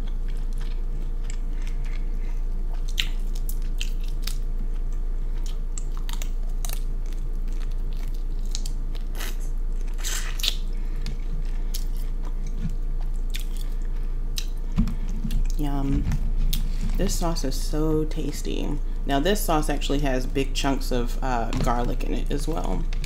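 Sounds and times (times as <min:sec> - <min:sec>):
person chewing and lip-smacking: 0:00.0 - 0:17.0
steady low hum: 0:00.0 - 0:23.0.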